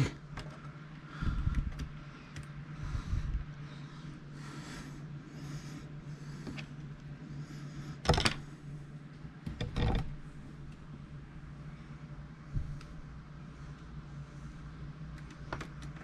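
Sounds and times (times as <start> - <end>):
low hum: 0.0 - 16.0
soft breathing: 0.8 - 9.2, 11.6 - 15.4.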